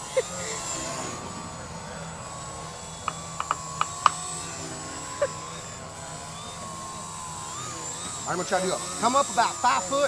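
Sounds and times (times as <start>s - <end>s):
small electric motor whining: 0.0s - 10.0s
sharp clicks: 3.0s - 4.4s.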